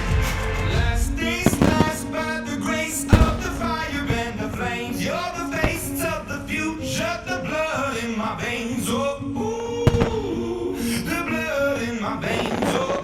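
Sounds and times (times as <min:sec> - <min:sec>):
pop song with singing: 0:00.0 - 0:13.0
firework bang: 0:01.2 - 0:07.2, 0:09.9 - 0:11.0.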